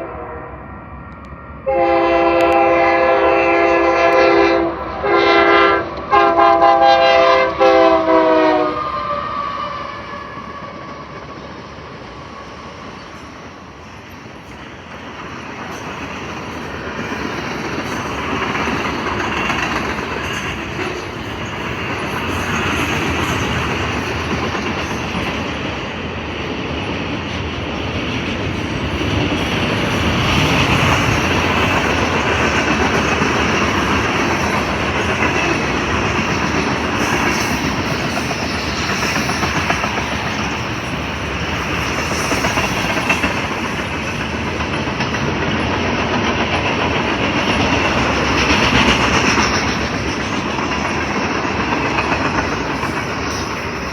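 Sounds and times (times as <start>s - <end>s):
freight train rumbling past: 0.0s - 53.9s
wheels clacking over rail joints: 12.8s - 53.9s.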